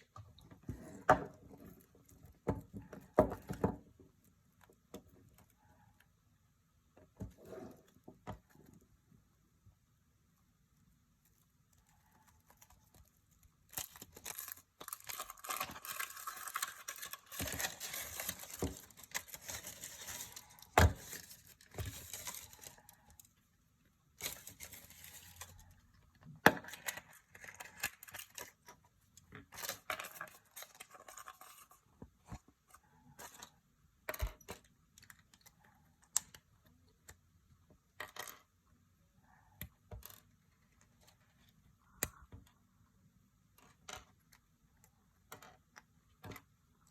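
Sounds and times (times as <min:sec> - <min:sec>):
foil wrapper crinkling: 0:13.7 - 0:23.3.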